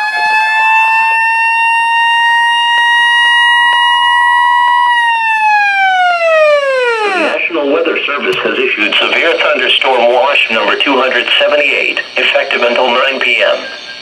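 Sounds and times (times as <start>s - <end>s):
warning siren winding down: 0.0s - 7.6s.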